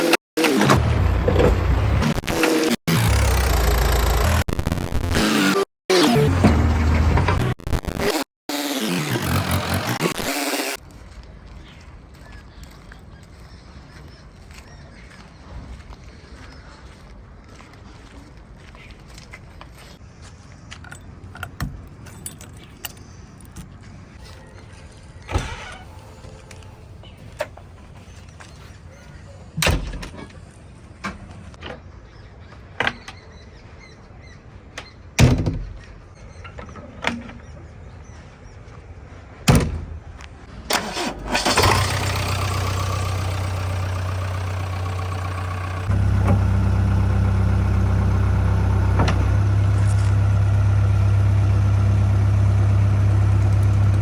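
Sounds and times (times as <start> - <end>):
diesel engine running: 0.0 - 5.5, 6.2 - 8.0, 40.8 - 54.0.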